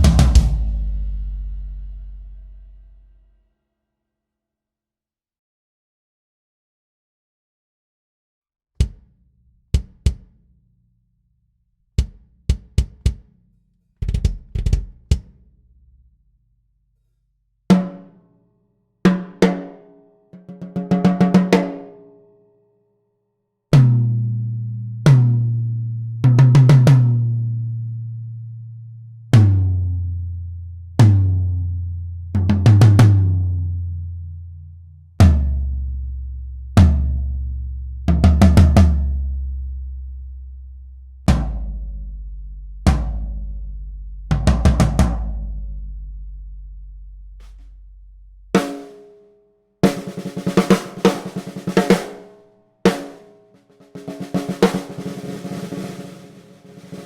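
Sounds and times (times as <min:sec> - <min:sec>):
drums struck one at a time: 0:00.0 - 0:02.6, 0:08.8 - 0:10.4, 0:12.0 - 0:13.4, 0:14.0 - 0:15.4, 0:49.8 - 0:52.3, 0:52.9 - 0:57.0.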